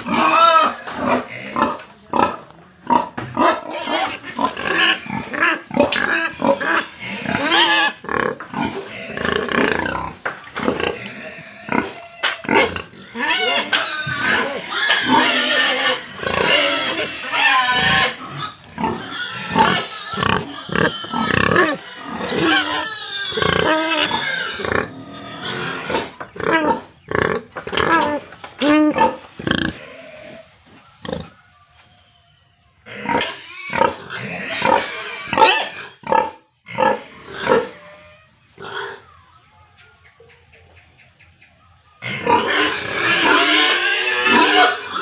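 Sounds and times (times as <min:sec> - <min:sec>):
pigs squealing and grunting: 0:00.0 - 0:31.8, 0:32.7 - 0:39.6, 0:41.8 - 0:45.0.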